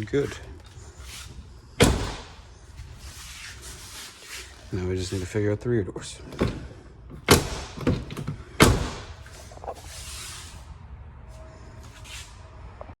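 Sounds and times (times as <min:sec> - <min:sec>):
car door knocks and thuds: 0:01.8 - 0:02.4, 0:06.4 - 0:09.3
soft rustle: 0:02.4 - 0:05.5.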